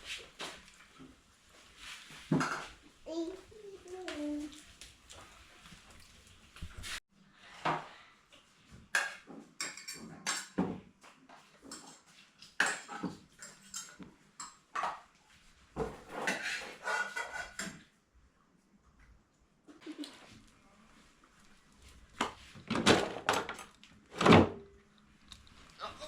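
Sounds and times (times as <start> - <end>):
dishes and cutlery clattering: 2.3 - 2.8, 9.0 - 10.8, 11.6 - 15.1, 15.8 - 17.9.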